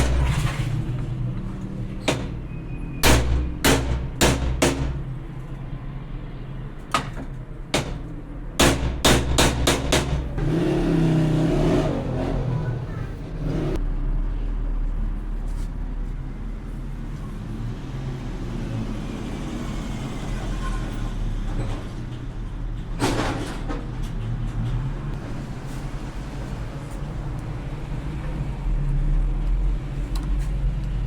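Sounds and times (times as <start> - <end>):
sharp knocks: 0.0 - 0.5, 2.0 - 5.2, 6.9 - 10.5.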